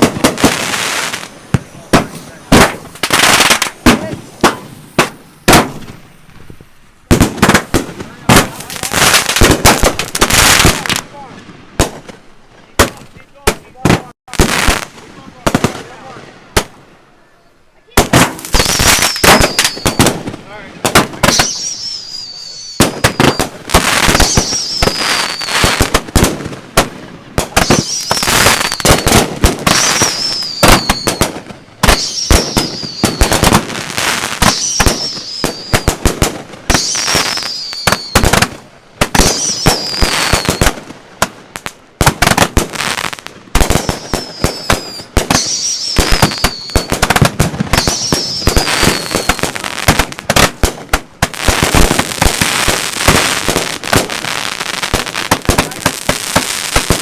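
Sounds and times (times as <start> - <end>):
fireworks pops and crackle: 0.0 - 16.9, 17.9 - 57.0
falling firework whistle: 18.5 - 20.2, 21.2 - 26.0, 27.6 - 36.0, 36.6 - 38.4, 39.2 - 40.8, 43.6 - 50.0.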